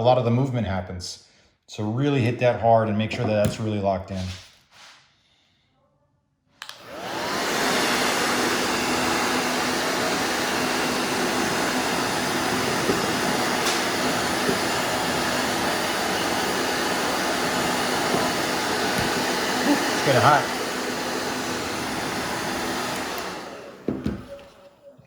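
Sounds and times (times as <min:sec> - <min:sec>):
blow dryer switch click: 0:06.6 - 0:06.9
blow dryer fan blowing: 0:06.6 - 0:24.8.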